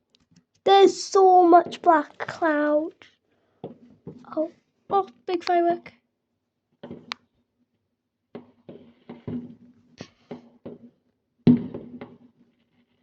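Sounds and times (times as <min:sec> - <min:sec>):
fireworks popping and banging: 0:08.3 - 0:13.0.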